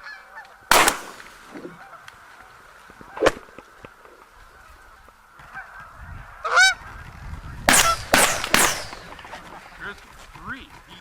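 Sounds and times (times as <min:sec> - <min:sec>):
geese honking: 0:00.0 - 0:01.0, 0:04.4 - 0:06.9
shotgun shots: 0:00.7 - 0:01.5, 0:07.7 - 0:09.4.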